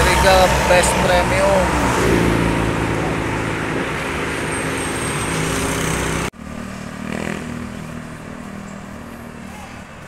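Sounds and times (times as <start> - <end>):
bus engine running: 0.0 - 6.3
road noise: 0.0 - 10.0.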